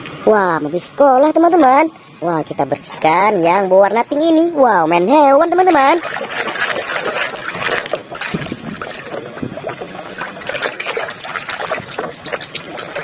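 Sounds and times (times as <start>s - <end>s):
water splashing in a basin: 5.4s - 13.0s.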